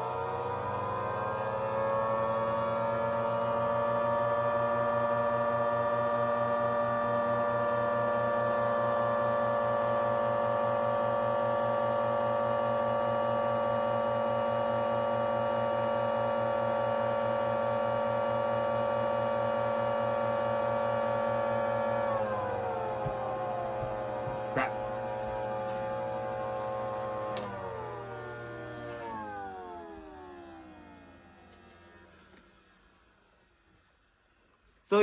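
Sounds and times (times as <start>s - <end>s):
pulsing low hum: 21.4s - 31.4s.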